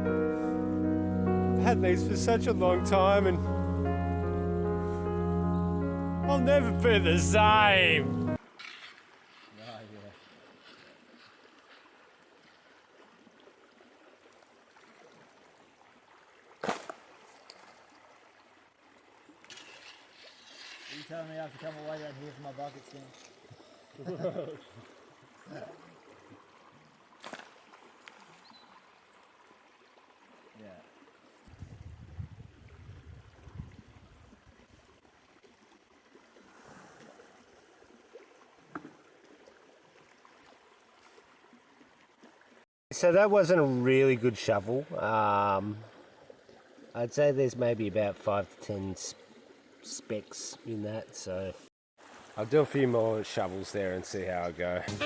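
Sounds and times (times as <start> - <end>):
creek water running: 0.0 - 5.0, 5.8 - 55.0.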